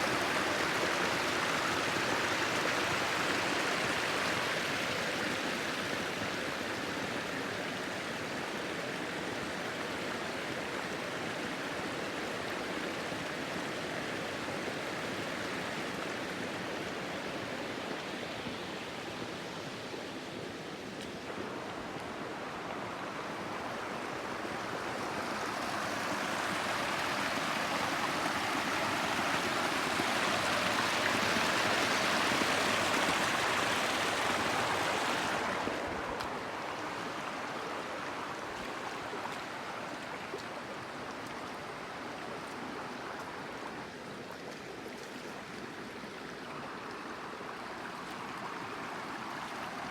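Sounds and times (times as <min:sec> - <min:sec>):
water rushing over waterfall: 0:21.2 - 0:49.9.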